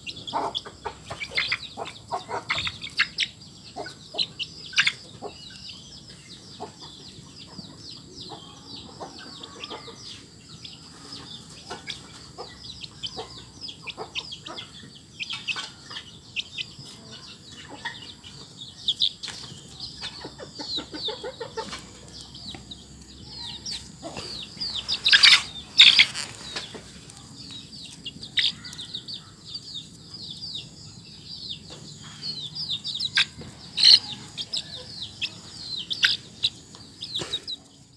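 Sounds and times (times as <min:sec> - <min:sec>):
chick peeping and chirping: 0:00.0 - 0:37.9
rustling: 0:23.8 - 0:27.3.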